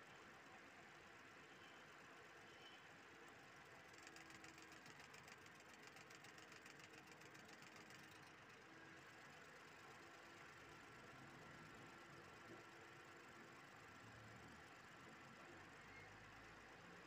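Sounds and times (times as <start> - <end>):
rapid even ticking: 3.8 - 8.4.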